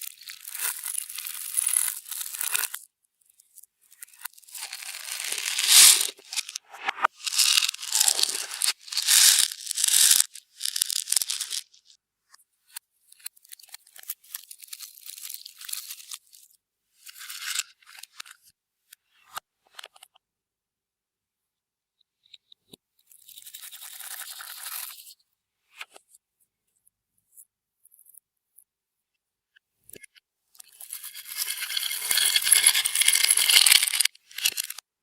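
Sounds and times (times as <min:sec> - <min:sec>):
slime crackling and squelching: 0:04.1 - 0:11.7.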